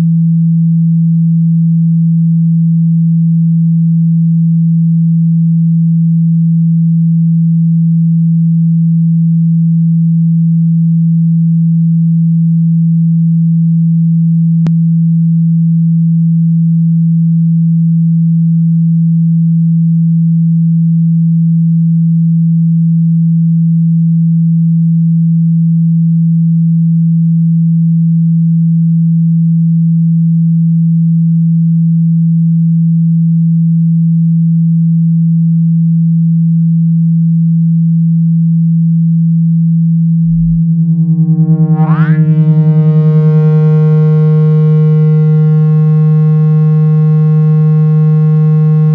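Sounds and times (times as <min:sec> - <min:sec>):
loud low pure tone: 0:39.8 - 0:48.9.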